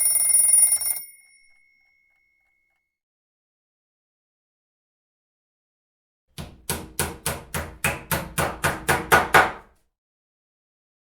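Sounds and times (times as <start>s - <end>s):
hammer striking: 6.4s - 9.7s.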